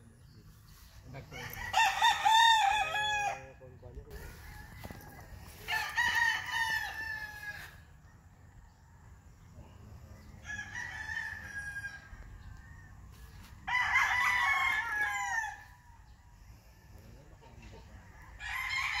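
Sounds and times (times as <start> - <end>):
rooster crowing: 1.3 - 7.9, 10.4 - 12.9, 13.6 - 16.2, 17.8 - 19.0.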